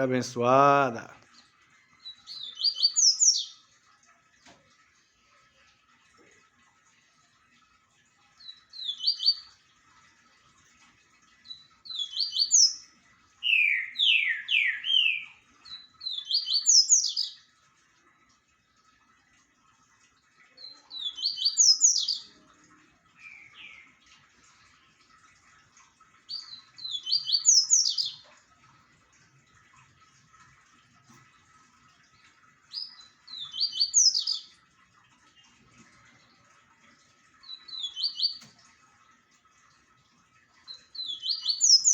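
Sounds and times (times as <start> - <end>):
small bird singing: 2.0 - 3.6, 8.4 - 9.5, 11.5 - 17.4, 20.6 - 22.4, 23.2 - 24.0, 26.3 - 28.2, 32.7 - 34.5, 37.4 - 38.5, 40.7 - 41.9.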